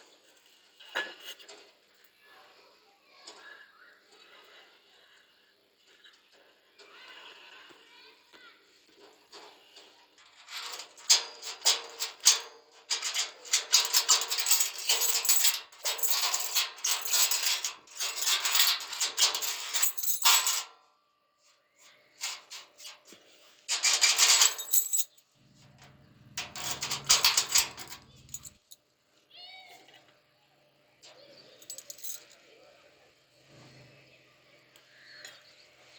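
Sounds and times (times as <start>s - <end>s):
metallic clinking and rattling: 10.2s - 20.8s, 23.7s - 28.8s, 31.6s - 32.4s.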